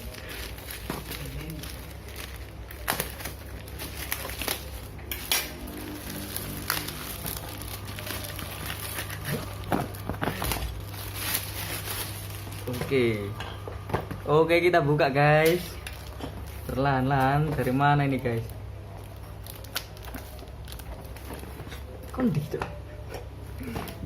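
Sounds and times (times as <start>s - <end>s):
plastic package crackling: 0.0s - 13.4s, 18.1s - 22.5s
steady low hum: 0.0s - 19.6s.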